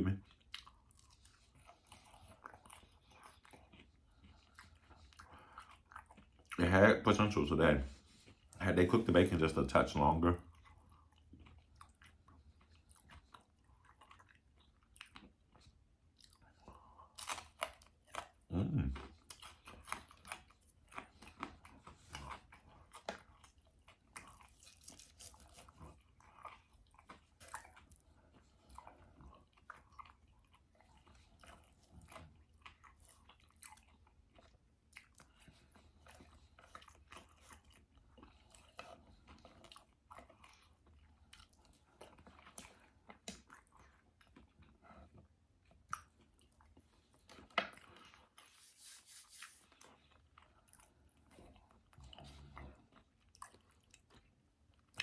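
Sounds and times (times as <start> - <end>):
person chewing food: 0.0 - 55.0.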